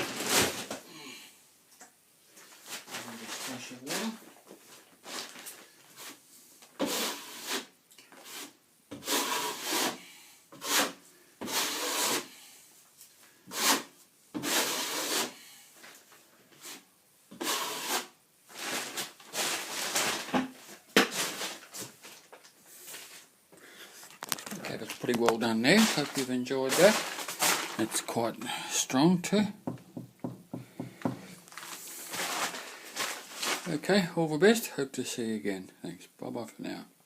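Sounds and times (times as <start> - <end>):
trowel scraping plaster: 6.8 - 12.3, 13.5 - 15.4, 16.6 - 20.1.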